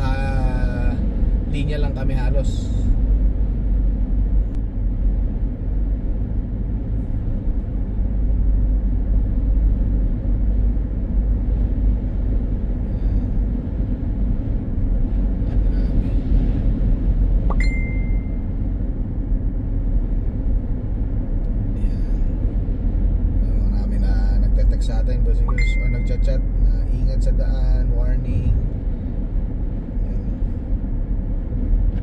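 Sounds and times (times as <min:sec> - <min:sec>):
road and wind rumble inside car: 0:00.0 - 0:32.0
short high beep: 0:17.5 - 0:18.5, 0:25.5 - 0:26.5.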